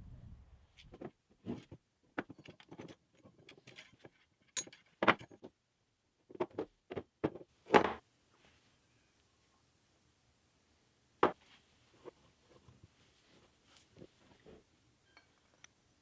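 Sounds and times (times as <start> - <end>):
metal clink: 15.0 - 15.7.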